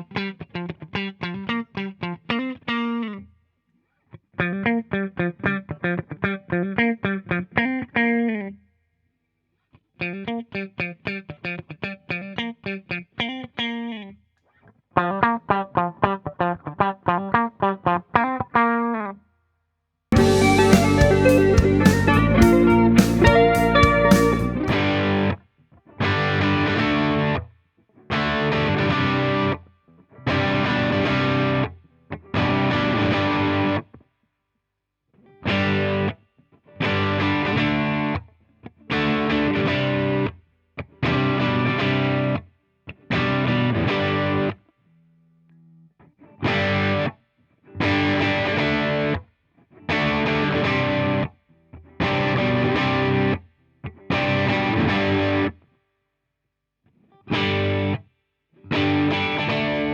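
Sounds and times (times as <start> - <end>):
electric guitar strummed chords: 20.2 - 25.4, 26.0 - 27.4, 28.1 - 29.6, 30.2 - 33.9, 35.4 - 36.2, 36.8 - 38.2, 38.9 - 40.3, 41.0 - 42.4, 46.4 - 47.1, 47.8 - 49.2, 49.9 - 51.3, 52.0 - 53.4, 54.0 - 55.6, 57.3 - 58.0, 58.7 - 59.9.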